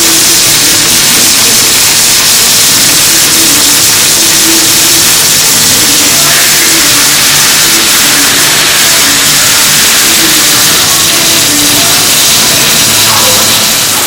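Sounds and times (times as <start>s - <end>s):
welding arc hissing: 0.0s - 14.0s.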